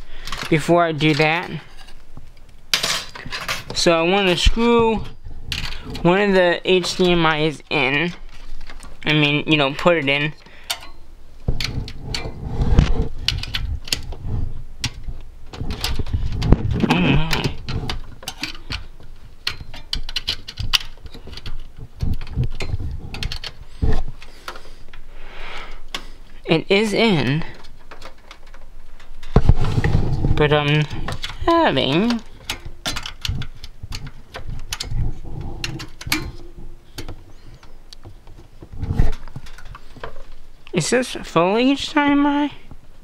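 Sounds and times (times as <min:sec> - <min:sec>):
plug clicking and scraping: 0:00.2 - 0:25.1, 0:27.5 - 0:40.7
clicks of cables and connectors: 0:08.0 - 0:14.2, 0:14.8 - 0:25.1.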